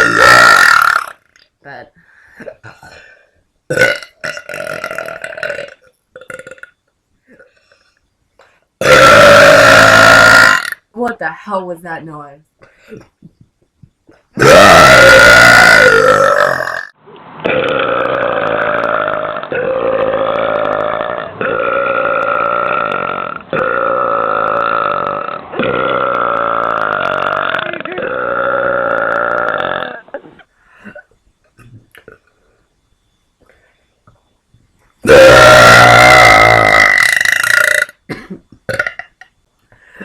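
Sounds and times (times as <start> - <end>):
woman burping loudly: 0.0 - 1.3, 2.4 - 7.7, 8.8 - 10.8, 14.1 - 32.2, 35.0 - 39.4
train of duller burps: 35.1 - 39.2.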